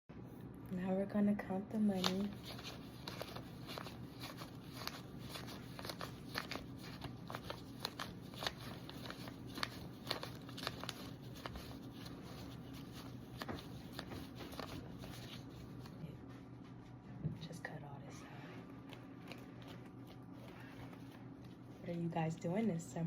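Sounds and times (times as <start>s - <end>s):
low room hum: 0.1s - 23.0s
paper money crinkling and flicking: 1.8s - 16.0s, 18.8s - 22.4s.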